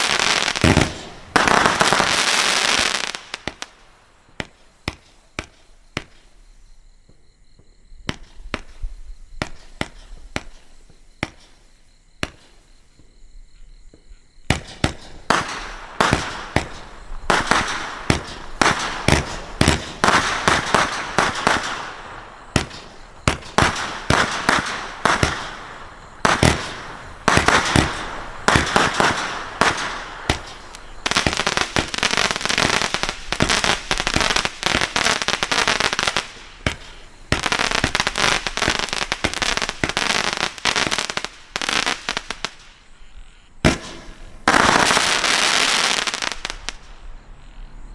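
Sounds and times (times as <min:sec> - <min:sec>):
firework crackling: 0:00.0 - 0:06.4, 0:14.5 - 0:42.8, 0:43.6 - 0:47.0
firework launch thumps and bursts: 0:00.6 - 0:02.1, 0:04.3 - 0:06.4, 0:07.1 - 0:11.6, 0:12.2 - 0:13.2, 0:13.9 - 0:40.0, 0:43.6 - 0:45.2.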